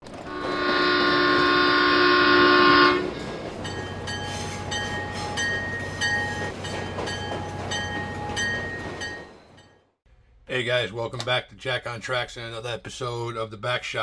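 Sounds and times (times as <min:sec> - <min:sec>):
locomotive air horn chord: 0:00.2 - 0:03.3.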